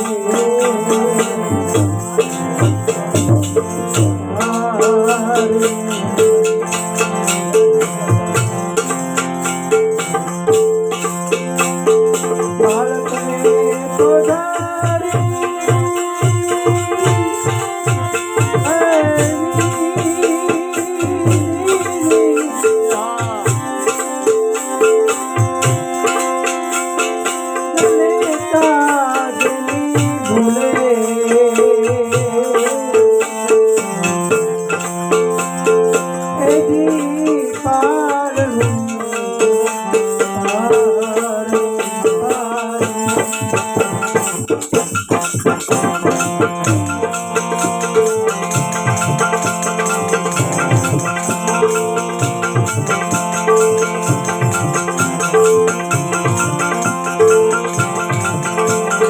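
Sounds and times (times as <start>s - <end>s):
devotional music melody: 0.0s - 44.5s
rattling hand percussion: 0.0s - 59.0s.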